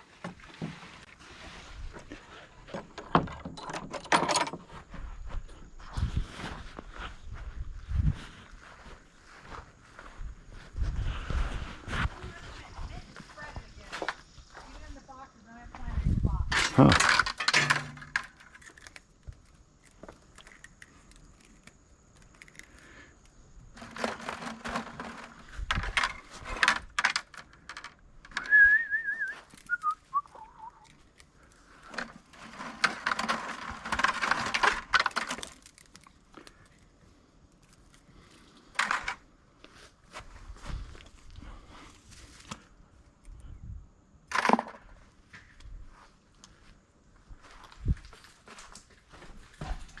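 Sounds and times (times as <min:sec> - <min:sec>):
metal scrap clinking and rattling: 0:02.9 - 0:04.6, 0:16.5 - 0:18.9
wavering falling whistle: 0:28.4 - 0:30.9.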